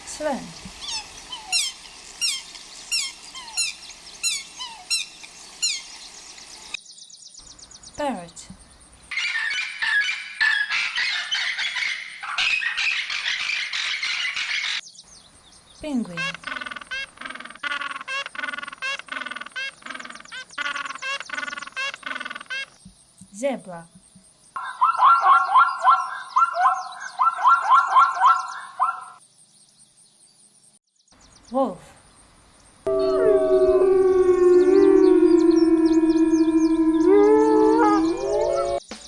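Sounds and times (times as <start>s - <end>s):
swan squeaky calls: 0.6s - 6.0s, 32.9s - 38.8s
penguin calling: 16.0s - 22.7s, 32.9s - 38.8s.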